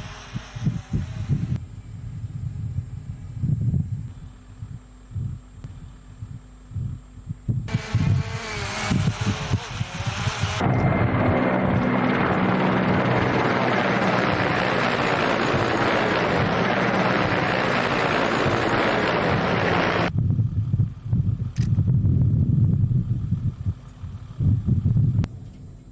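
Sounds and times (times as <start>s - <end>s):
wind buffeting microphone: 0.0s - 25.9s
loud engine roar: 7.7s - 20.2s
low rumble: 10.5s - 25.9s.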